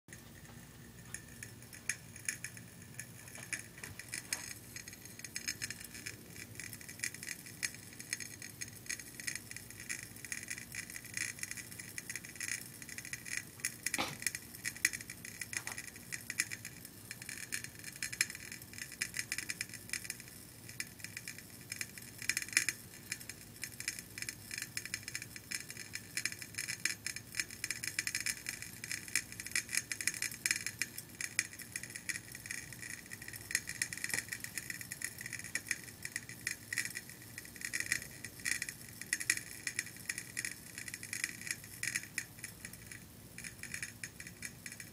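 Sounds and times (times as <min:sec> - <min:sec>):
light bulb crackling: 0:00.1 - 0:44.9.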